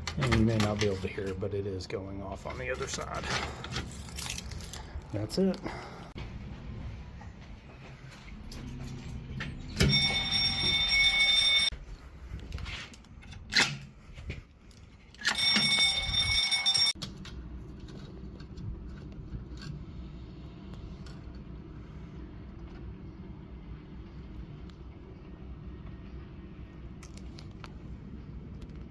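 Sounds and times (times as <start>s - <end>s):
fire alarm bell ringing: 9.6s - 11.7s, 15.2s - 17.0s.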